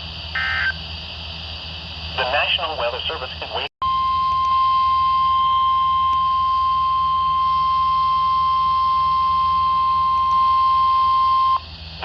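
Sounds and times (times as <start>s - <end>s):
continuous warning alarm tone: 0.0s - 12.0s
faint radio hiss and hum: 2.1s - 3.7s.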